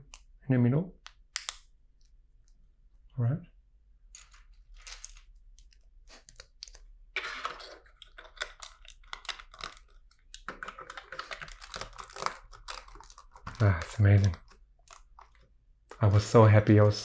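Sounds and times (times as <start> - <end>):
plastic bricks clicking and rustling: 4.1 - 16.0.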